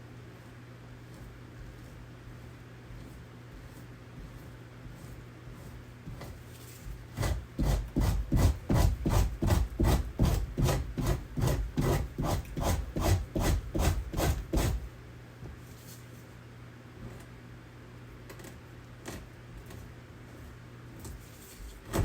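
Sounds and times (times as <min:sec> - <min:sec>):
rasping strokes: 0:00.4 - 0:14.8.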